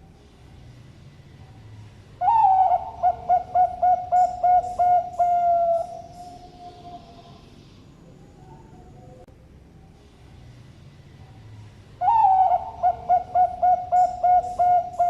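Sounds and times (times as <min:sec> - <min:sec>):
dove cooing: 0:02.2 - 0:09.3, 0:12.0 - 0:15.0.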